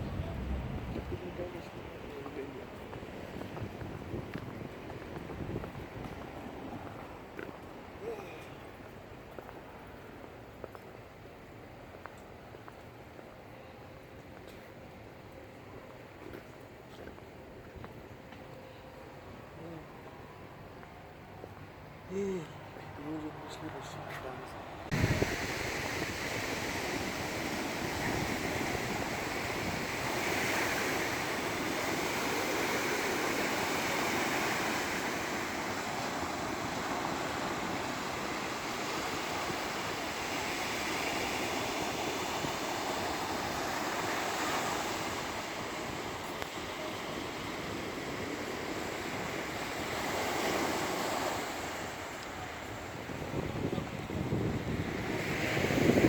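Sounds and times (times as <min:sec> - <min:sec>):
wind on microphone: 0:00.0 - 0:02.2, 0:03.0 - 0:07.0, 0:24.9 - 0:51.6, 0:52.4 - 0:56.0
waves breaking on shore: 0:00.0 - 0:10.2, 0:22.1 - 0:56.0.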